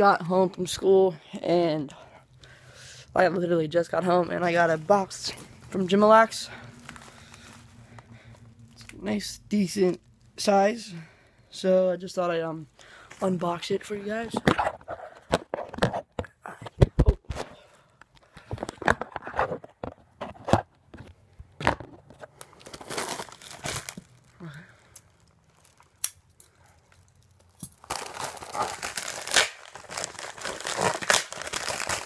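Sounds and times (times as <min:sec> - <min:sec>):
packing material crinkling: 0:04.3 - 0:09.2, 0:21.6 - 0:32.0
tape and packaging tearing: 0:22.4 - 0:24.3, 0:24.9 - 0:32.0.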